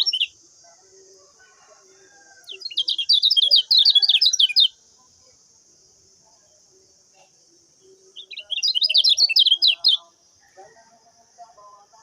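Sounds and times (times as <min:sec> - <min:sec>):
bird chattering song: 0:00.0 - 0:00.4, 0:02.5 - 0:04.8, 0:07.8 - 0:10.2
faint steady high hiss: 0:00.0 - 0:12.0.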